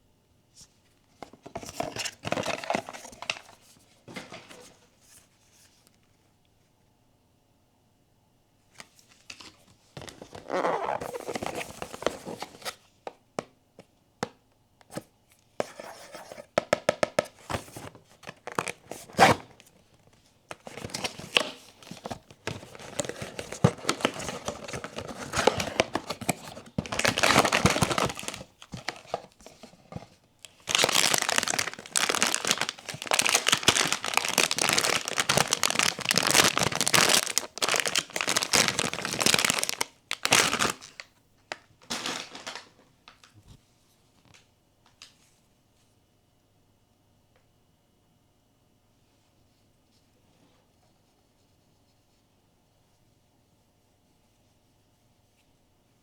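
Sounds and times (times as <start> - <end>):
packaging tearing and crinkling: 20.5 - 29.4, 30.4 - 41.1, 41.8 - 43.2.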